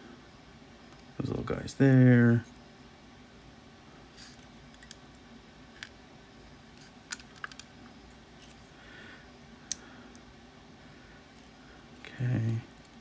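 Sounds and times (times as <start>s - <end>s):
metal lock parts clicking: 4.2s - 6.0s, 7.1s - 7.8s.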